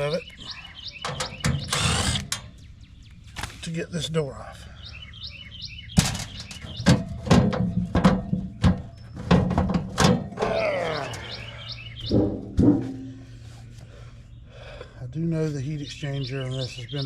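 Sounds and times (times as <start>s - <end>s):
birds chirping: 0.0s - 17.0s
sheet metal door knocks and clunks: 6.0s - 10.4s, 12.1s - 13.2s.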